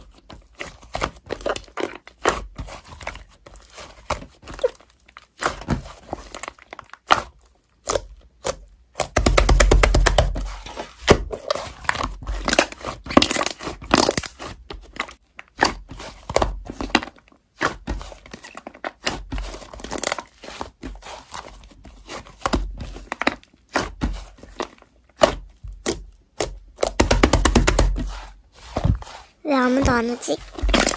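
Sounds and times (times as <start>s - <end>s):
slime crackling and popping: 1.1s - 20.8s, 30.5s - 30.9s.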